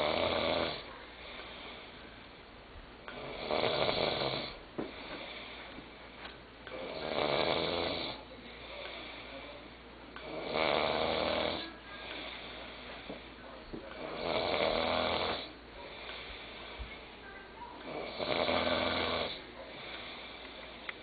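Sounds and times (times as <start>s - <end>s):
boy snoring: 0.0s - 0.9s, 3.1s - 5.5s, 6.7s - 8.3s, 10.2s - 11.7s, 14.0s - 15.6s, 17.9s - 19.4s
quiet breathing: 0.0s - 21.0s.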